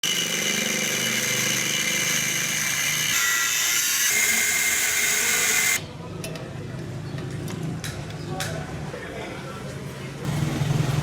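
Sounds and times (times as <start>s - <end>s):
power tool whining: 0.0s - 5.8s.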